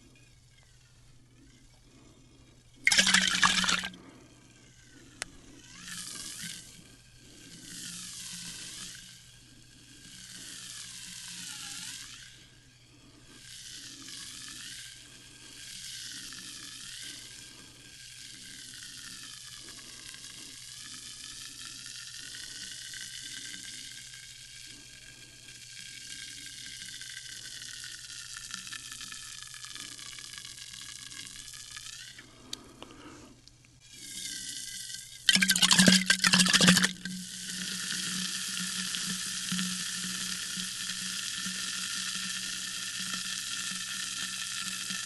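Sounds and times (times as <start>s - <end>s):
sparkling water fizzing: 2.9s - 3.9s, 35.3s - 37.1s.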